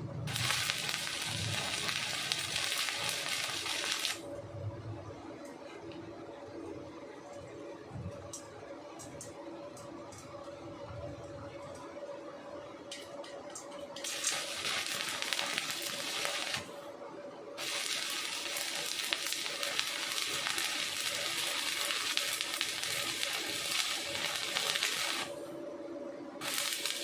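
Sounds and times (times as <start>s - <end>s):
welding arc crackling and sizzling: 0.0s - 4.3s, 12.8s - 16.9s, 17.6s - 25.5s, 26.4s - 27.0s
faint machine hum: 0.0s - 27.0s.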